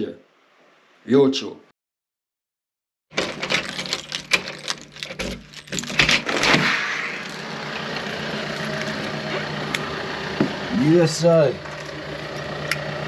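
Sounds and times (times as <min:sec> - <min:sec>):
low engine hum: 0:06.5 - 0:13.0.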